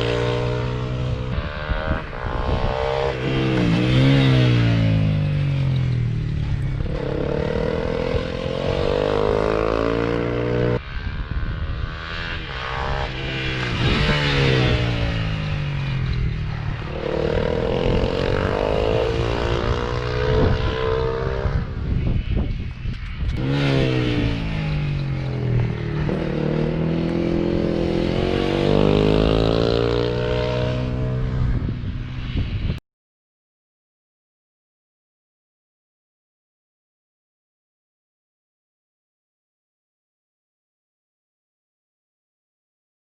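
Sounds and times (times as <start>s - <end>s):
wind and road noise: 0.0s - 32.8s.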